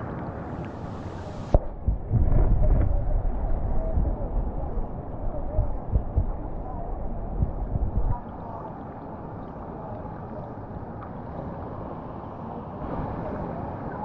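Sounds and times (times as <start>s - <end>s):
water rushing over rocks: 0.0s - 9.4s
low thumps: 1.5s - 8.3s.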